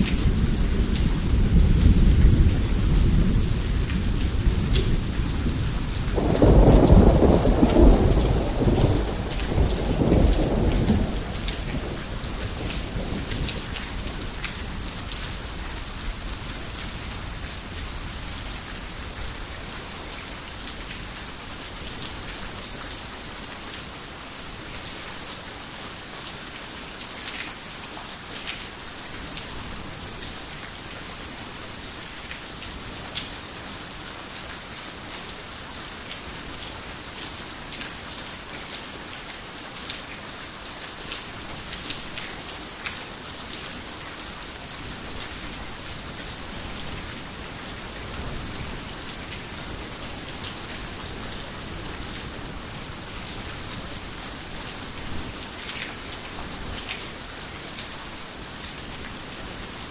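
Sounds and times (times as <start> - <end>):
heavy rain falling: 0.0 - 59.9
low thunder rumble: 0.2 - 14.3.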